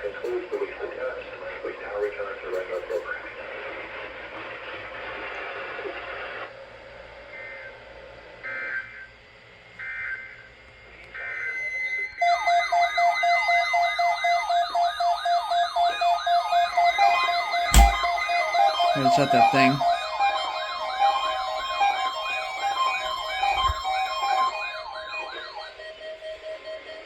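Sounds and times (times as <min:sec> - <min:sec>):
warbling siren alert tone: 0:12.2 - 0:26.9
sharp click: 0:17.7 - 0:18.2
steady tone: 0:17.7 - 0:19.9.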